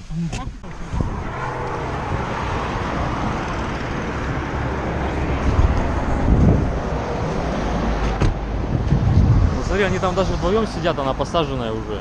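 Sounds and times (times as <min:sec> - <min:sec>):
car engine hum inside cabin: 0:00.0 - 0:09.6.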